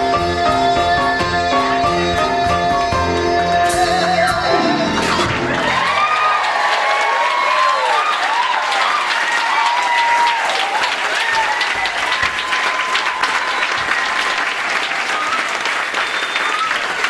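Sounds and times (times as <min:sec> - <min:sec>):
audience applauding: 0:04.8 - 0:17.0.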